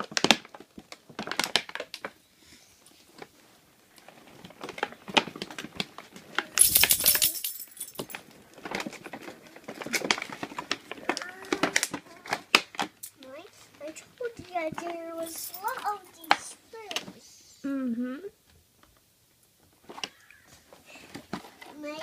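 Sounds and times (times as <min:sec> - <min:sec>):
packaging rustling: 0:00.0 - 0:02.2, 0:03.0 - 0:17.1
plastic toys clicking and knocking: 0:00.0 - 0:02.2, 0:04.0 - 0:17.1.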